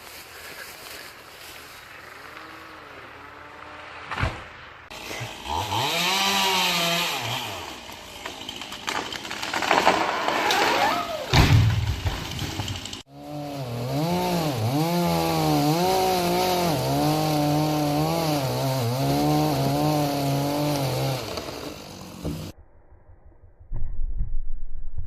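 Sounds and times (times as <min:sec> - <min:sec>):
chainsaw cutting: 0:01.8 - 0:04.2, 0:04.9 - 0:11.3, 0:12.0 - 0:22.5
heavy thump: 0:11.3 - 0:12.4.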